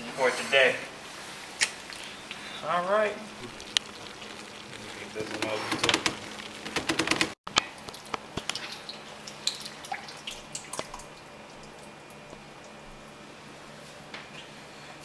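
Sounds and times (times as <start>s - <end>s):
water dripping: 3.3s - 13.0s.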